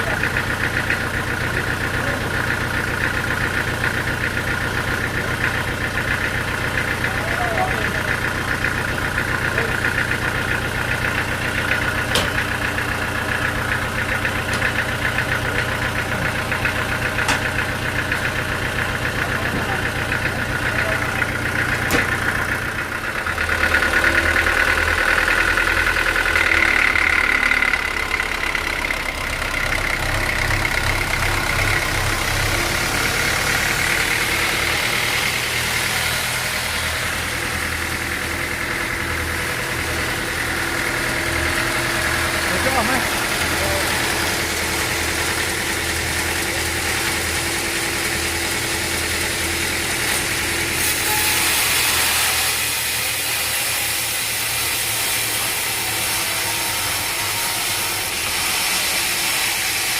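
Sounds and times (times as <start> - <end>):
sawmill machinery rumble: 0.0 - 59.9
high machinery whine: 29.1 - 59.9.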